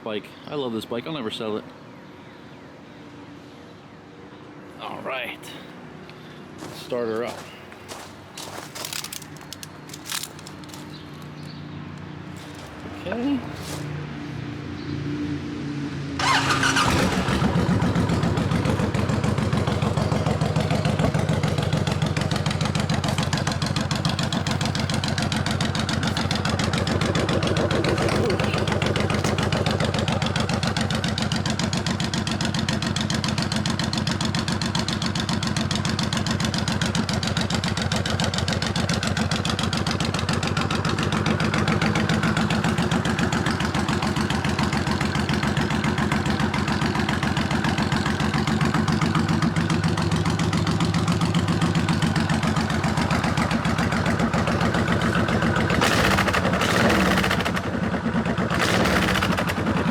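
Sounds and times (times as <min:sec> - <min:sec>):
motorcycle engine idling: 0:16.2 - 0:59.9.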